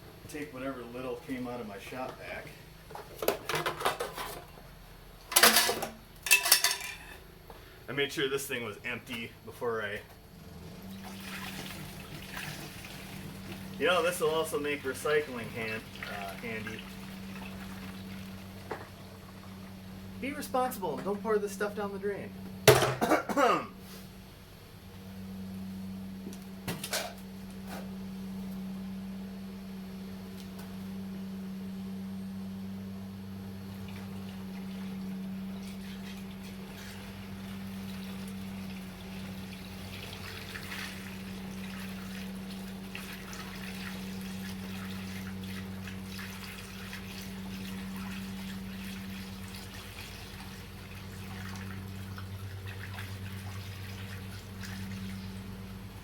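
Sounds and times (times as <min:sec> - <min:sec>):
steady low hum: 0:00.0 - 0:56.0
coolant pouring into plastic jug: 0:10.9 - 0:19.7, 0:33.8 - 0:55.4.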